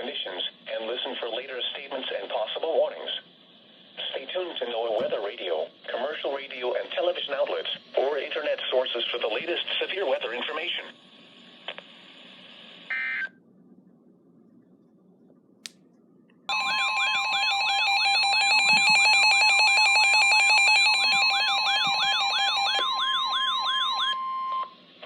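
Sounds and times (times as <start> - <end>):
warbling alert siren: 16.5 - 24.5
steady warning alarm tone: 16.5 - 24.7.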